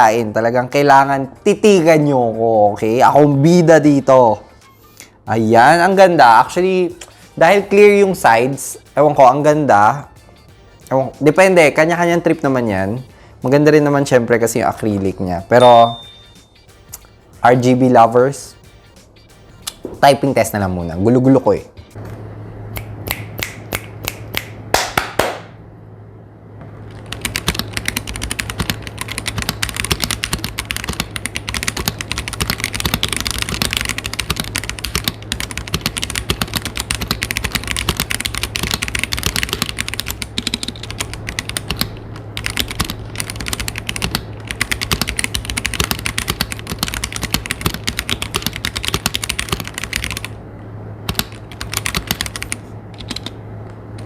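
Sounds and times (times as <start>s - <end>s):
steady low hum: 0.0s - 54.0s
mechanical keyboard typing: 26.9s - 50.4s, 51.1s - 53.4s.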